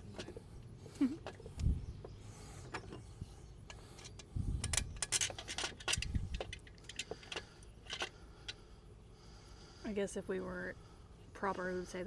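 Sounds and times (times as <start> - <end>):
metal tools clinking: 3.7 - 8.1.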